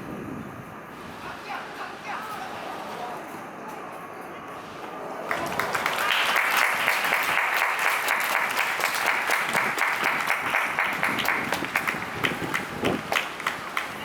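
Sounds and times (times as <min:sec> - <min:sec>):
stadium crowd clapping: 0:05.2 - 0:14.0.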